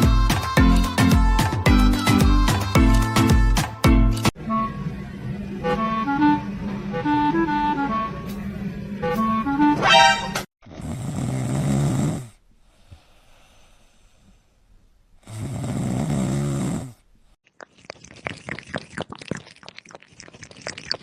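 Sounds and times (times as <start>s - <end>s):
pet snoring: 10.7s - 12.4s, 15.2s - 17.0s.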